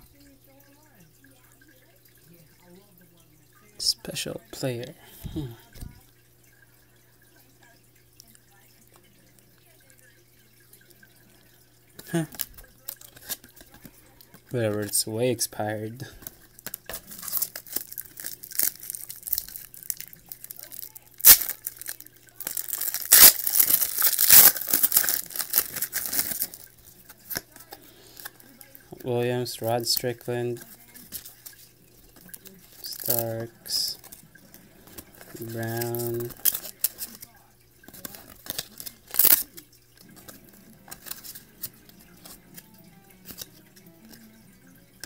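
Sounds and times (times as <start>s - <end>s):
wrapper tearing and crinkling: 12.2s - 13.8s, 16.4s - 28.8s, 30.6s - 34.2s, 34.8s - 42.4s, 43.2s - 43.5s
cards being flipped and slid: 37.9s - 44.2s.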